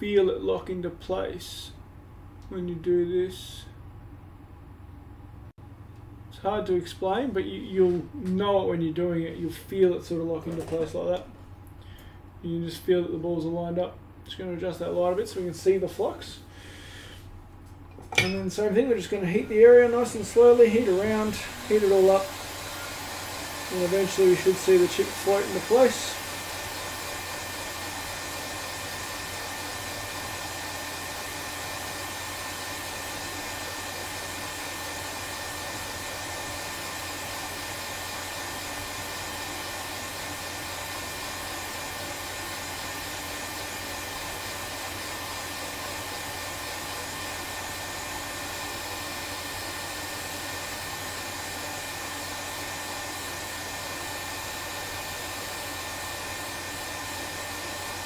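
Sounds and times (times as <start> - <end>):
hot-air station blowing with whistle: 18.1 - 58.0.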